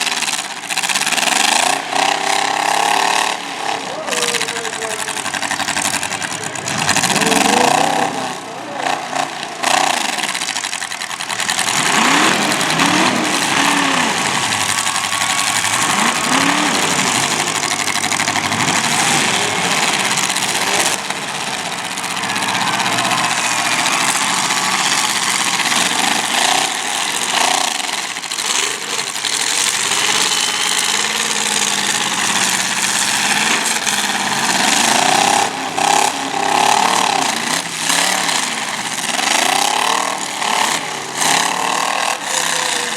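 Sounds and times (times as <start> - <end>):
car engines revving: 0.0 - 42.9
loud steady din: 0.0 - 42.9.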